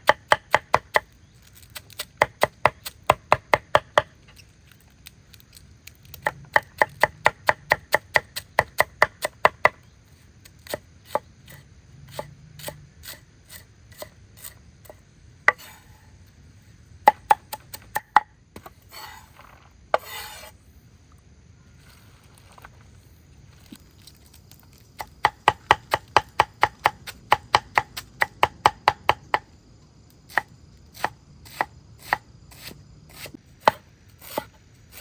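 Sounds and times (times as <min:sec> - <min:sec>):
chopping strokes: 0:10.6 - 0:16.0, 0:17.1 - 0:20.5, 0:30.3 - 0:35.0
short scraping sounds: 0:15.5 - 0:16.2, 0:18.6 - 0:20.7.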